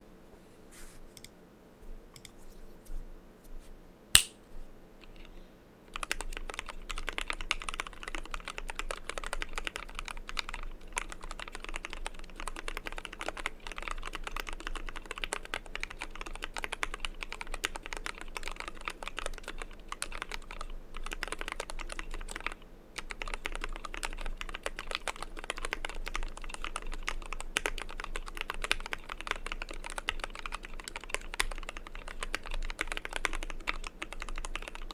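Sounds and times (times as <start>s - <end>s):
sharp click: 4.2s - 4.4s
mechanical keyboard typing: 5.9s - 34.9s.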